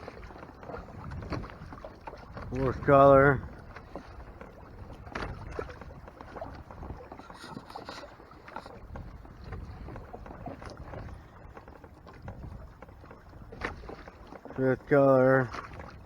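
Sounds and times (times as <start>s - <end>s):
wind buffeting microphone: 0.0s - 14.1s, 15.4s - 16.0s
small knocks and splashes: 0.0s - 16.0s
water lapping against kayak hull: 0.0s - 16.0s.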